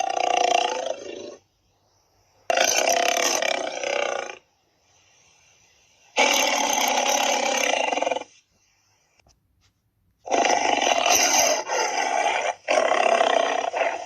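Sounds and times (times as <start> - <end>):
dinosaur roar: 0.0 - 1.4, 2.5 - 4.4, 10.3 - 14.0.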